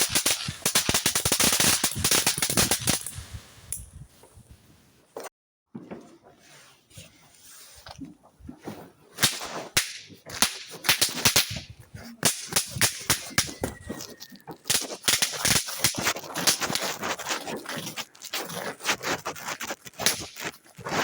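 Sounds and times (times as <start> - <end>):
small fireworks popping: 0.0 - 4.5, 9.2 - 21.0.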